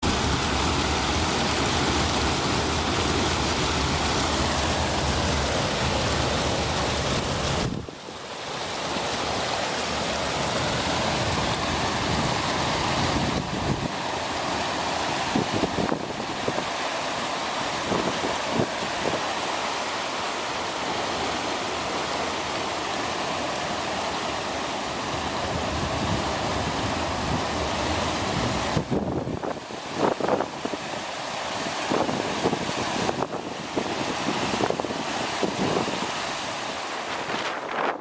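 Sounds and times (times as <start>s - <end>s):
flowing water rushing: 0.0s - 38.0s
wind rumbling on microphone: 3.3s - 8.0s, 11.0s - 13.9s, 15.3s - 16.7s, 25.2s - 30.9s, 31.9s - 38.0s.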